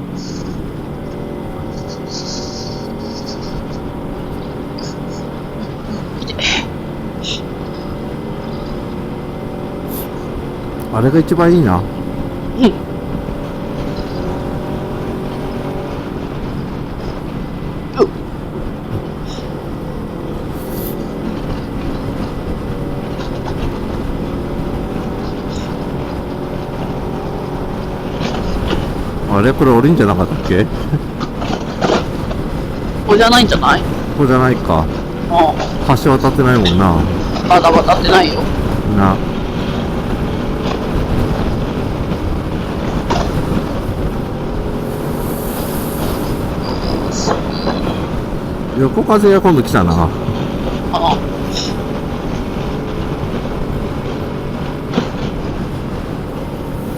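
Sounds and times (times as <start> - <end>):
motorcycle engine cruising: 0.0 - 56.9
wind on microphone: 11.7 - 49.0.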